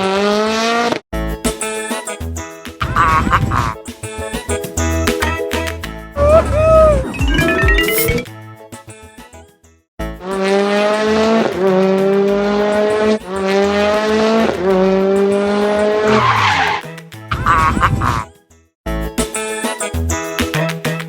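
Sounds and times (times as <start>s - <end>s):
tire screech: 6.2s - 7.1s, 10.3s - 18.2s
race car engine accelerating: 10.3s - 16.8s.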